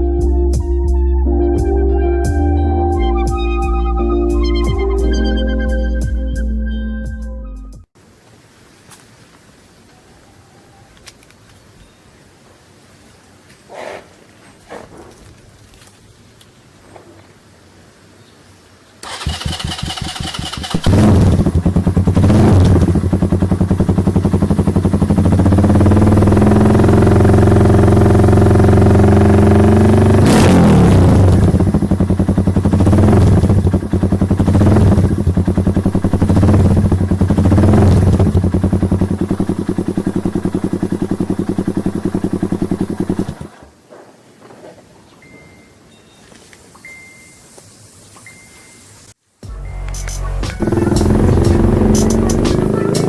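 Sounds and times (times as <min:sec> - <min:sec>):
motorcycle engine cranking: 0:19.0 - 0:25.3
motorcycle engine idling: 0:19.0 - 0:30.0, 0:31.1 - 0:43.5, 0:50.5 - 0:53.0
motorcycle engine revving: 0:19.0 - 0:43.6, 0:50.5 - 0:53.0.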